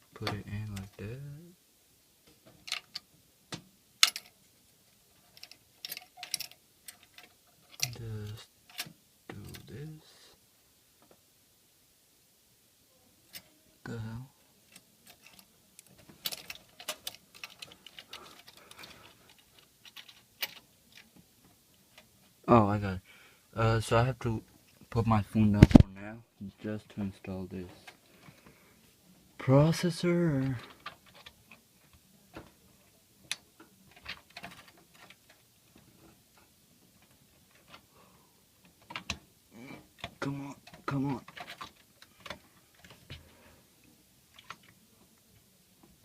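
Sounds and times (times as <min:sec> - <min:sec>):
plastic and metal parts clicking: 0:04.0 - 0:04.4, 0:05.3 - 0:08.0, 0:14.7 - 0:21.2, 0:33.3 - 0:35.4, 0:38.6 - 0:39.2, 0:40.0 - 0:43.2.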